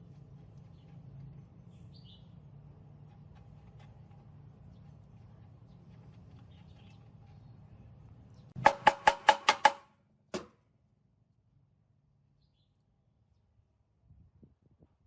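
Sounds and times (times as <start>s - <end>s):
hammer striking metal: 8.6s - 10.5s.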